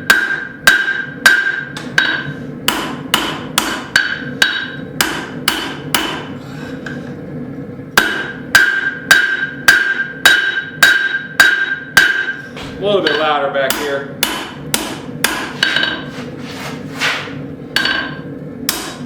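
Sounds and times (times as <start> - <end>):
hammer striking steel on anvil: 0.0 - 7.0, 8.0 - 16.1, 17.2 - 19.0.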